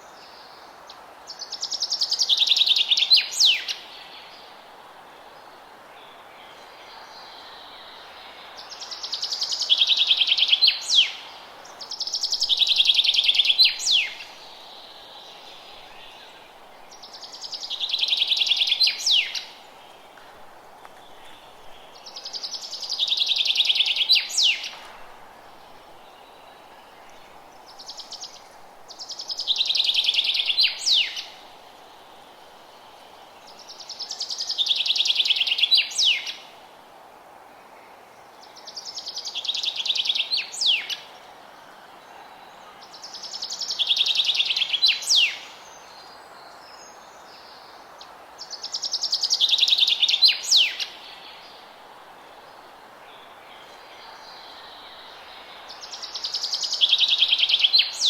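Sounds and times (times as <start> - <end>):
low background hiss: 0.0 - 58.0.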